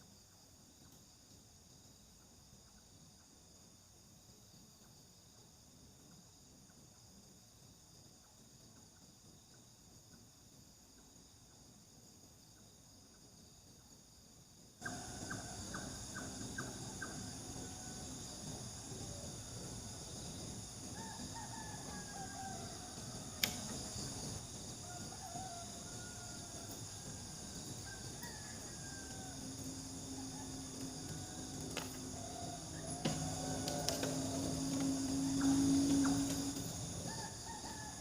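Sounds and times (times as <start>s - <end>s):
crickets and insects trilling: 0.0s - 38.0s
faint gliding calls: 14.8s - 38.0s.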